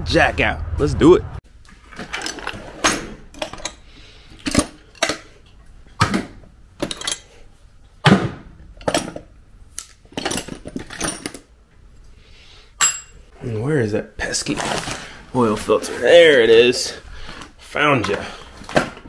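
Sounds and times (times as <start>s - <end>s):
hand tools clinking: 6.8s - 7.4s, 12.8s - 13.2s.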